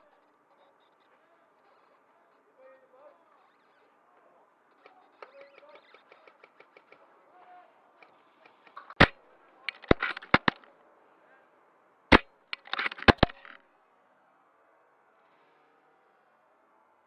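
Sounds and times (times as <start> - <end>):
clicks and knocks: 8.0 - 10.7, 12.1 - 13.6
airsoft rifle shots: 8.5 - 10.7, 12.1 - 13.6.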